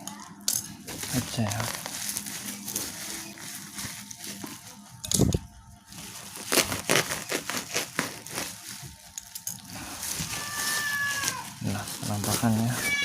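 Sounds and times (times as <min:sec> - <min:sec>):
packaging crackling and rustling: 0:00.6 - 0:13.0.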